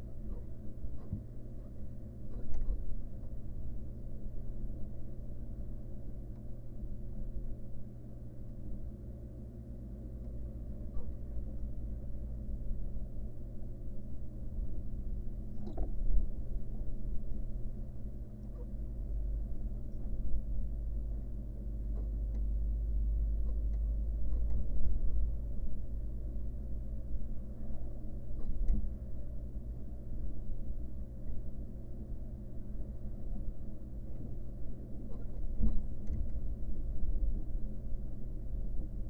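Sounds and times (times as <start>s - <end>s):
low electrical hum: 0.0s - 39.0s
faint ticks and scratches: 0.2s - 3.4s.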